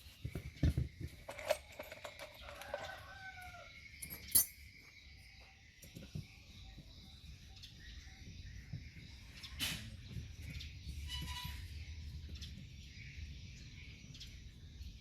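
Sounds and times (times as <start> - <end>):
tools clicking and knocking on metal: 0.3 - 4.6
rooster crowing: 2.3 - 3.8.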